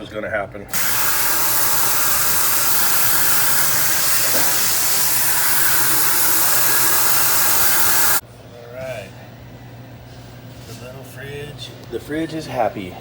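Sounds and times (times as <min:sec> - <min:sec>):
steady rushing hiss: 0:00.7 - 0:08.2.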